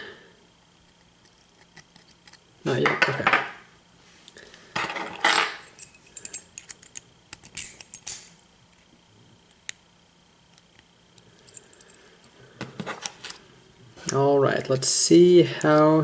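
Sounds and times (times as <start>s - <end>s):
metal parts scraping and rattling: 4.8s - 8.4s.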